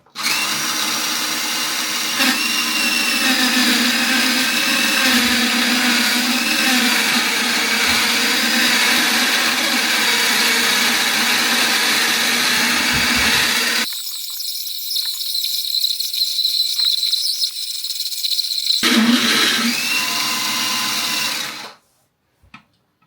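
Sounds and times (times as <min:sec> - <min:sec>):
plastic blade grinding wood: 0:00.2 - 0:13.9
toy saw motor whining: 0:00.2 - 0:21.8.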